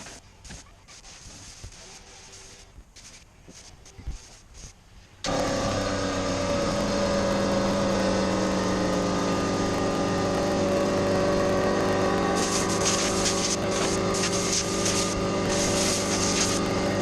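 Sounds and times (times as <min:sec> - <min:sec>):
harsh hiss bursts: 0:00.0 - 0:07.9, 0:08.5 - 0:17.0
power sander running: 0:05.3 - 0:17.0.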